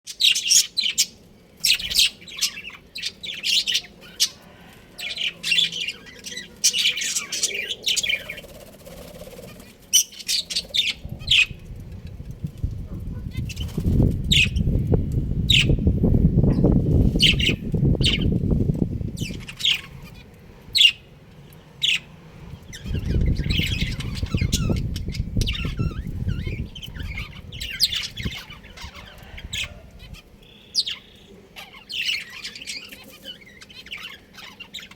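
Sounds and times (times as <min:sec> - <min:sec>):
budgerigars chirping: 0:00.1 - 0:08.5, 0:09.3 - 0:11.6, 0:13.0 - 0:14.8, 0:15.5 - 0:18.6, 0:19.2 - 0:21.1, 0:21.8 - 0:34.9
low rumbling noise: 0:10.8 - 0:30.4.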